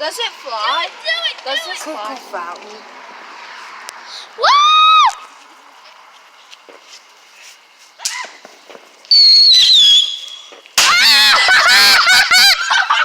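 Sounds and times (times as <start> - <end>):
firework crackling: 4.3 - 12.3
whistling firework: 9.1 - 11.8.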